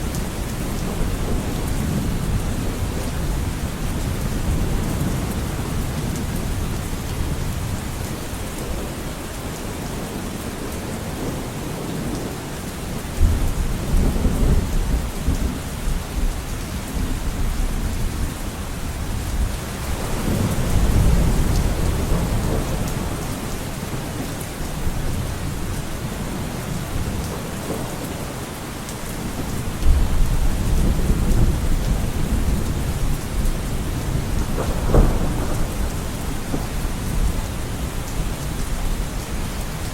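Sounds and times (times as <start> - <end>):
steady rain falling: 0.0 - 39.9
rolling thunder rumbles: 13.2 - 28.4, 29.2 - 39.9.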